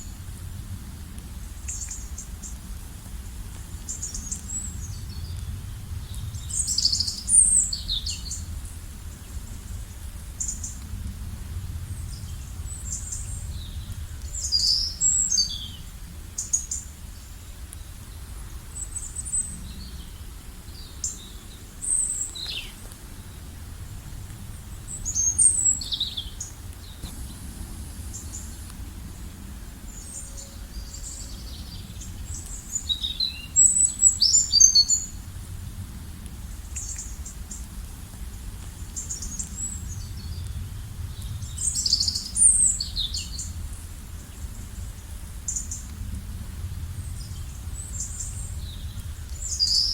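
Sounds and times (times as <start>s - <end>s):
birds chirping: 24.8s - 34.7s
low rumble: 26.4s - 32.4s.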